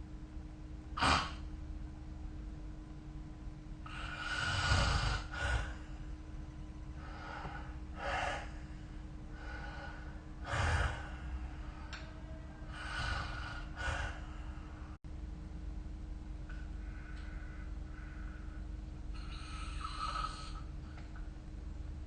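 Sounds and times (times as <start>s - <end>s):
faint steady hum: 0.0s - 22.0s
person snoring: 3.9s - 5.9s, 9.4s - 11.5s, 12.7s - 14.6s, 19.1s - 20.7s.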